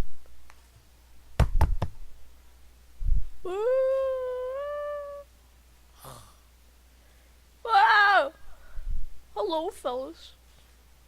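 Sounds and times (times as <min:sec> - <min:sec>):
hummed tone sliding up: 0:03.0 - 0:05.3.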